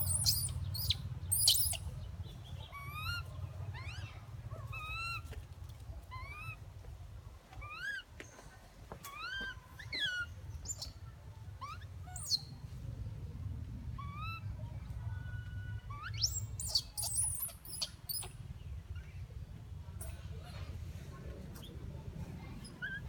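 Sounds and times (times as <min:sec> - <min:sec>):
baby monkey cooing and squealing: 0:00.0 - 0:01.9, 0:02.7 - 0:05.3, 0:06.1 - 0:06.6, 0:07.6 - 0:08.0, 0:09.1 - 0:11.0, 0:11.6 - 0:12.5, 0:15.9 - 0:18.3, 0:22.6 - 0:23.0
low steady rumble: 0:00.0 - 0:23.0.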